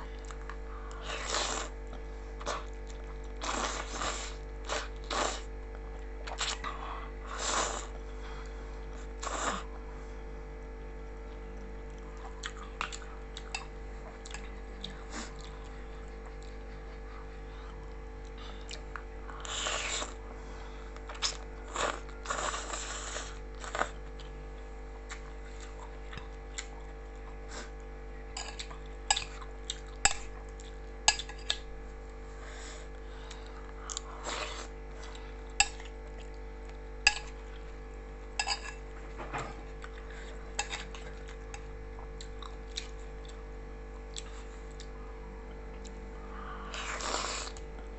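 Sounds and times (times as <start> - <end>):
steady hum: 0.0 - 47.9
noodles being slurped: 0.9 - 5.5, 6.2 - 8.0, 9.0 - 9.7, 19.4 - 20.2, 21.1 - 24.0, 33.4 - 36.4, 46.6 - 47.7.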